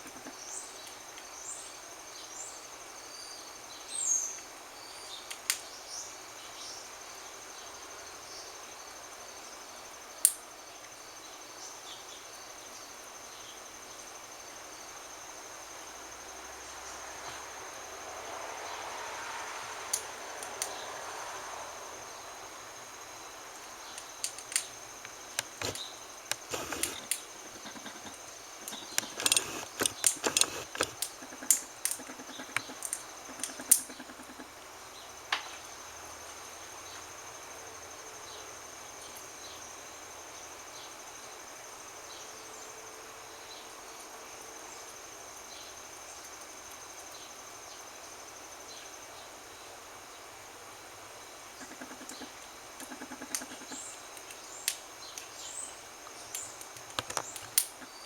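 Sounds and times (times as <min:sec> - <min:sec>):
animal crackling clicks: 0:24.0 - 0:34.0, 0:56.3 - 0:57.8.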